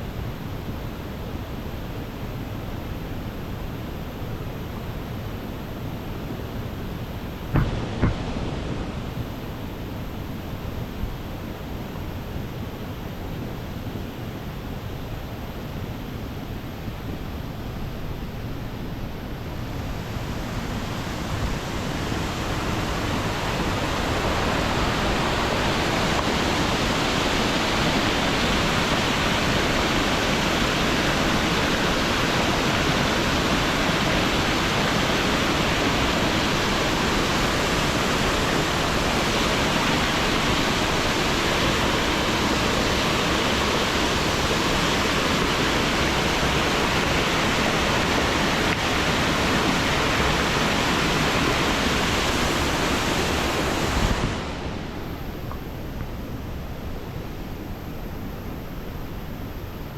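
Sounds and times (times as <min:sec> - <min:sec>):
waterfall rushing: 0:19.6 - 0:55.3.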